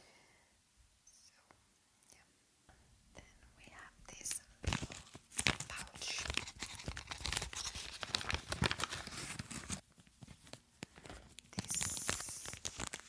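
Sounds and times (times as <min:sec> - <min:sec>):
packaging crinkling and rustling: 0:04.6 - 0:13.0.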